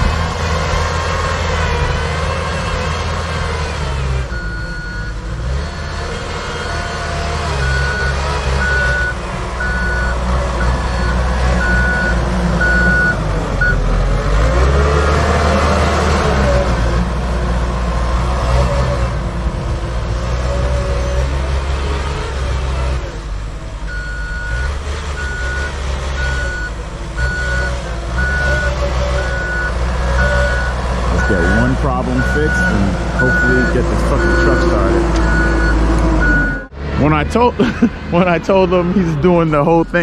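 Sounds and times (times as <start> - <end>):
diesel engine running: 0.0 - 40.0
reversing alarm beeping: 4.3 - 13.8, 23.9 - 36.7.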